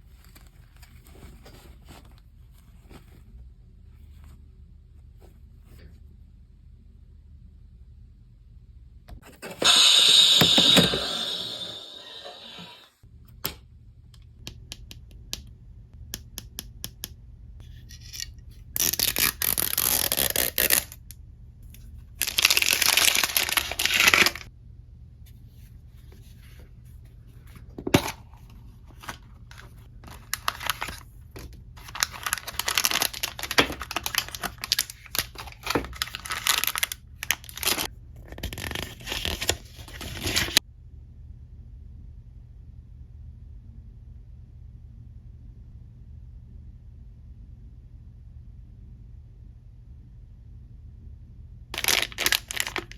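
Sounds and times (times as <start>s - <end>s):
packaging ripping: 18.8s - 21.0s, 22.2s - 24.5s, 29.0s - 31.0s, 31.8s - 40.6s, 51.8s - 52.9s
wrapping crinkling: 22.2s - 24.5s, 28.8s - 37.9s, 51.8s - 52.9s.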